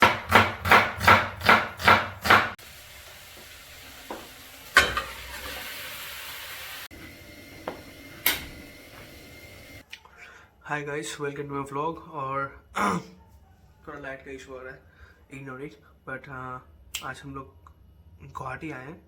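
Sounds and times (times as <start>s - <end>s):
food sizzling in a pan: 2.6s - 9.8s.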